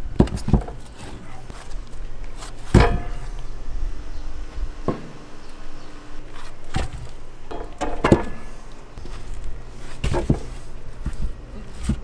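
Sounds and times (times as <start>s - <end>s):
steady low hum: 0.0s - 12.0s
objects knocking and clattering: 0.2s - 1.3s, 2.6s - 3.4s, 6.7s - 8.6s, 10.0s - 12.0s.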